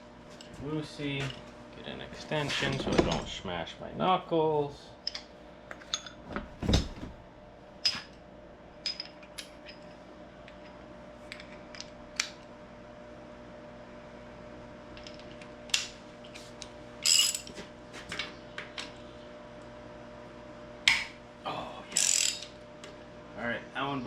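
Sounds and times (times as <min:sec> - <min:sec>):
faint steady hum: 0:00.0 - 0:24.0.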